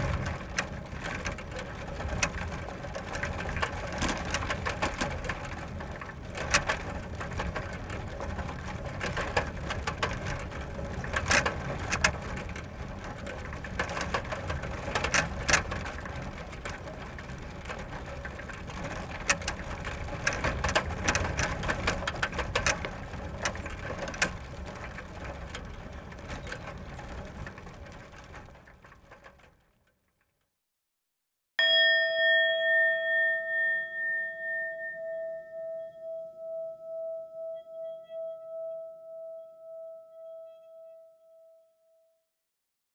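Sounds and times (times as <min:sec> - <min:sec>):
bicycle chain rattling: 0:00.0 - 0:29.8
bicycle clicks and clanks: 0:00.0 - 0:30.4
bell-like tone ringing: 0:31.6 - 0:41.6.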